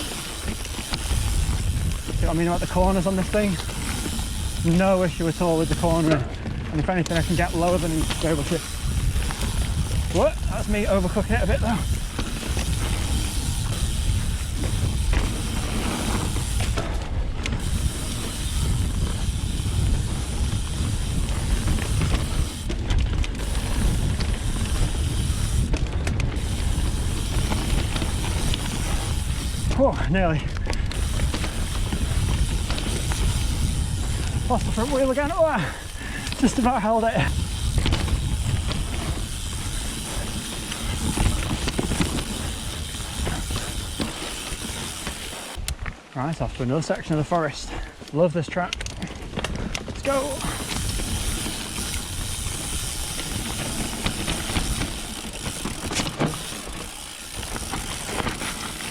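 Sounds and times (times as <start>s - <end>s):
wind on microphone: 0.0s - 46.0s
bike chain and frame rattling: 0.0s - 58.9s
tyres rumbling on dirt: 0.0s - 58.9s.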